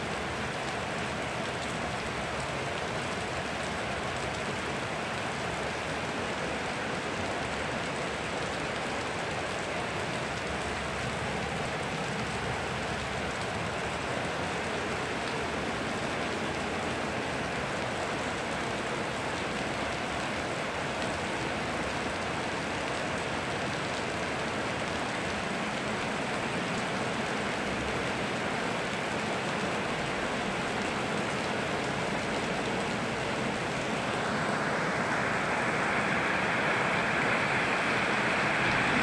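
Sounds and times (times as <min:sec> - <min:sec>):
flowing river water: 0:00.0 - 0:39.0
steady rain falling: 0:00.0 - 0:39.0.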